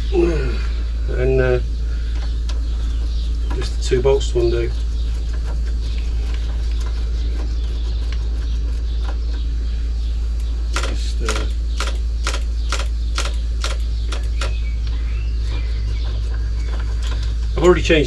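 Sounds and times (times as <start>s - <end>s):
hand tool metallic clicks: 10.4s - 14.6s.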